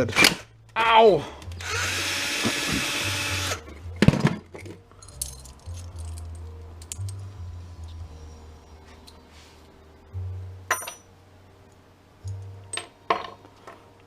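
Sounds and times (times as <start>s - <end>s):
faint background music: 0.0s - 14.0s
power drill running: 1.6s - 3.6s
small metal clicks: 5.0s - 7.2s.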